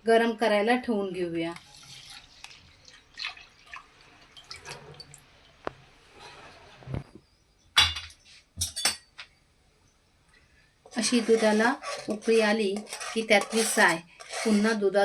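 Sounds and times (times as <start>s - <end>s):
milk pouring and dripping: 1.6s - 5.9s.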